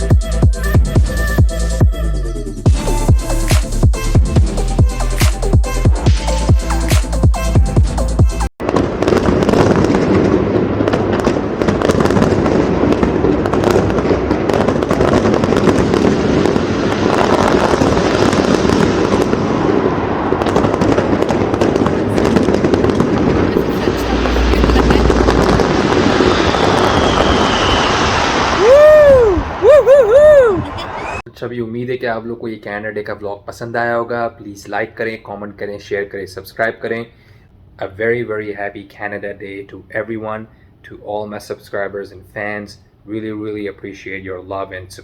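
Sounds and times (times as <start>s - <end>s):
fireworks bangs and crackles: 8.6s - 31.2s.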